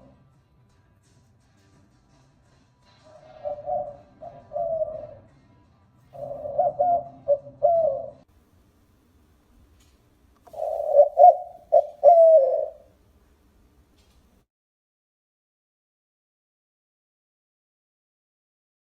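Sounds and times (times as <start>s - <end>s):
dove cooing: 3.0s - 5.3s, 6.1s - 8.2s, 10.5s - 12.9s.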